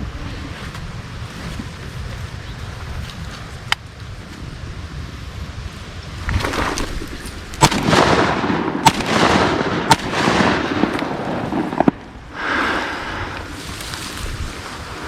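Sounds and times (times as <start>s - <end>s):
rushing noise: 4.5s - 15.0s
shotgun shots: 7.6s - 12.2s.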